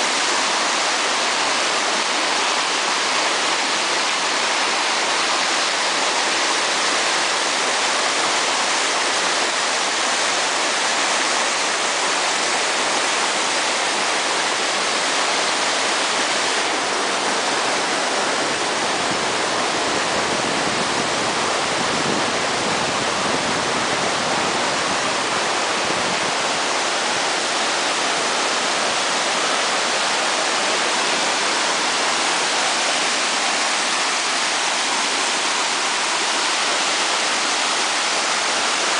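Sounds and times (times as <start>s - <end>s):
waterfall rushing and splashing: 0.0s - 38.9s.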